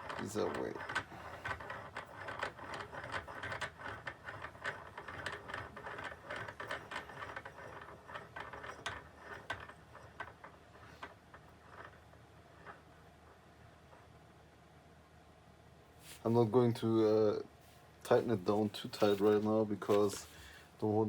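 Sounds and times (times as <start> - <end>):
vise screw clicking and rattling: 0.0 - 14.1.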